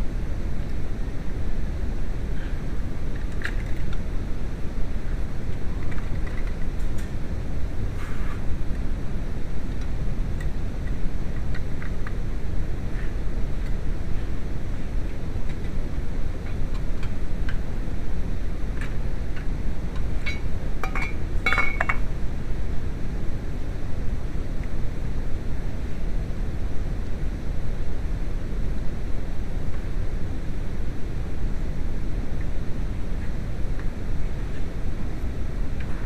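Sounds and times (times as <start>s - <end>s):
steady low rumble: 0.0s - 36.0s
metal clinks: 20.2s - 22.0s.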